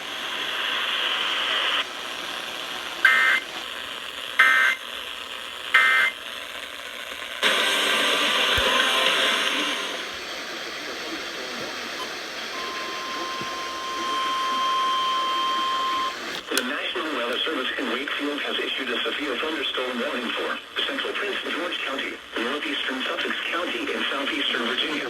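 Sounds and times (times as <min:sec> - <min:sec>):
radio hiss: 0:00.0 - 0:25.0
harsh buzzing data bursts: 0:03.0 - 0:03.4, 0:04.4 - 0:04.8, 0:05.7 - 0:06.2.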